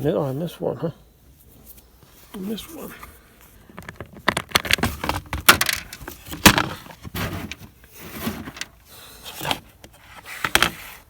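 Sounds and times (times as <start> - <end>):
plastic panel clicking and rattling: 3.7 - 7.7
tools being handled: 3.7 - 8.8.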